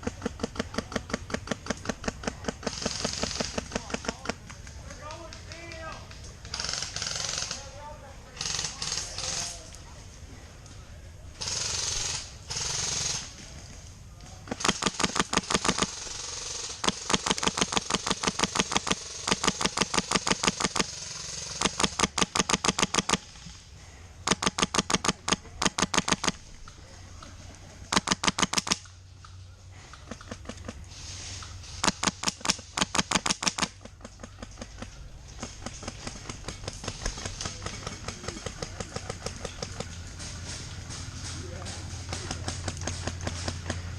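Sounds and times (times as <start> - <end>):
airsoft gun firing full-auto: 14.6 - 23.3, 24.3 - 26.4, 27.9 - 28.8, 31.8 - 33.7.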